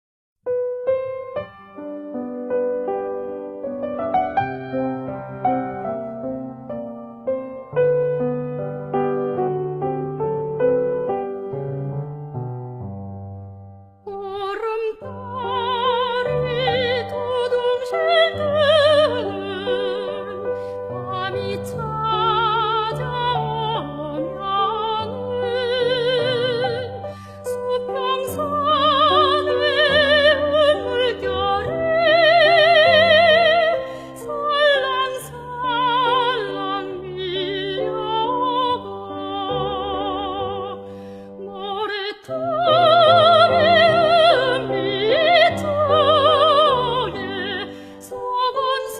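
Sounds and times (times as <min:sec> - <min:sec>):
piano accompaniment: 0:00.5 - 0:48.9
soprano singing with vibrato: 0:14.1 - 0:48.9.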